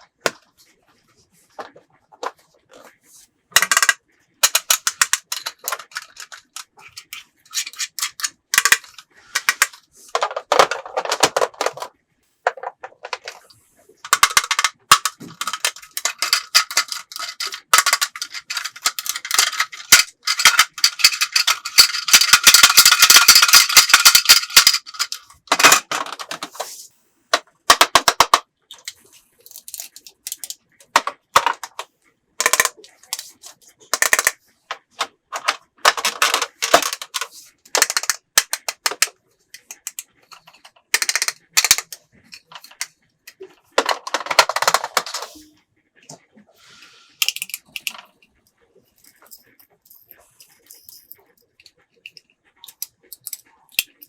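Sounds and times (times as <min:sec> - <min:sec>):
plastic toy pieces clattering: 0:03.6 - 0:26.7, 0:27.3 - 0:45.4, 0:47.2 - 0:48.2, 0:49.0 - 0:54.0
rapid rattling: 0:14.0 - 0:26.1.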